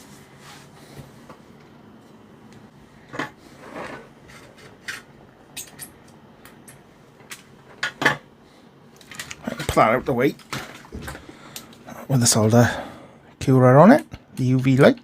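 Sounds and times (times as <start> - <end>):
tools clinking on workbench: 5.6 - 6.0.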